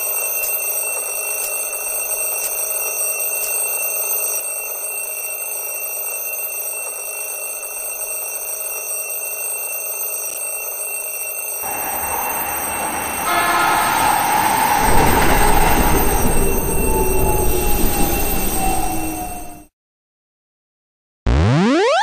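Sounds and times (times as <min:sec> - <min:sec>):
alarm clock ringing: 0:00.0 - 0:19.7
rushing noise: 0:11.7 - 0:19.7.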